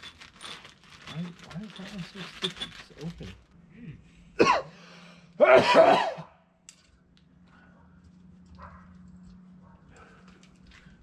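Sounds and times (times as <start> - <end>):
person sneezing loudly: 5.4 - 6.3.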